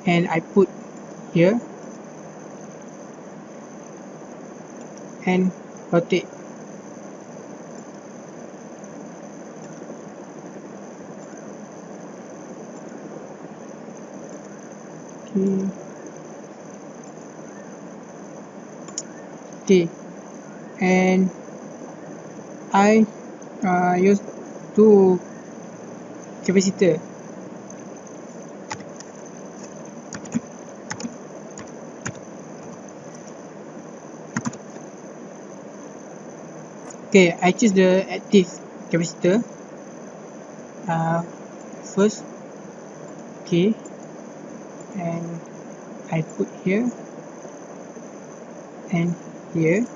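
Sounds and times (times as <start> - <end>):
faint high whine: 0.0 - 49.9
fan hum and hiss: 0.0 - 49.9
computer mouse clicking: 18.9 - 19.2, 28.7 - 33.4, 34.4 - 34.9.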